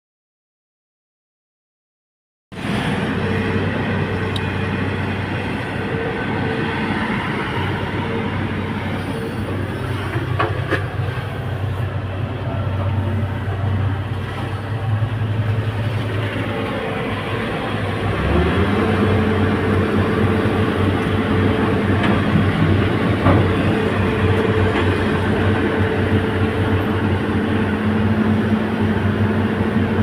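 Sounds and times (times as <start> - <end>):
excavator diesel engine droning: 2.6 - 30.0.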